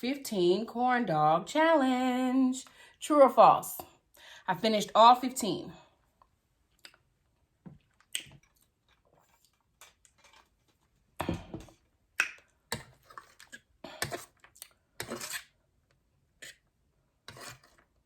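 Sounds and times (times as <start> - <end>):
wet mouth clicks and smacks: 8.0 - 8.6, 12.2 - 12.4.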